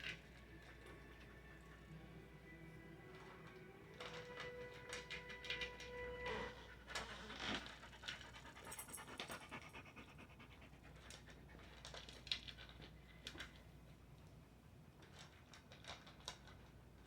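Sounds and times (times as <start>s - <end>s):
dog panting: 6.3s - 13.0s.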